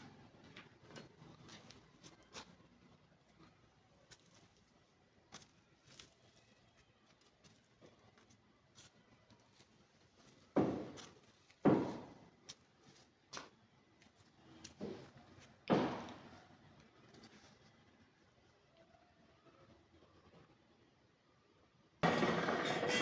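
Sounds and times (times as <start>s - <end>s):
heavy knocks on machine parts: 10.6s - 11.0s, 11.7s - 12.2s, 15.7s - 16.2s, 22.0s - 22.9s.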